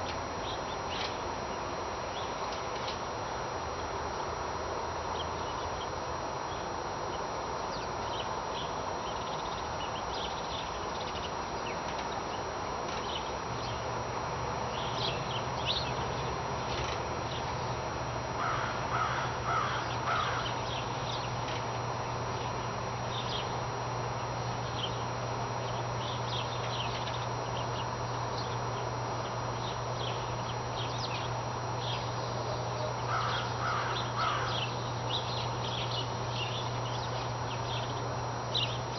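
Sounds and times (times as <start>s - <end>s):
low steady hum: 0.0s - 38.9s
harsh bird calls: 18.4s - 21.4s, 29.6s - 38.0s.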